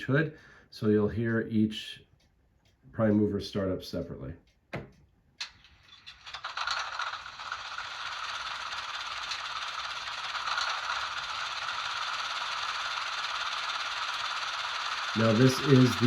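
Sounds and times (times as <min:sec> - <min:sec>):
diesel engine sound from small speaker: 0:06.4 - 0:16.0.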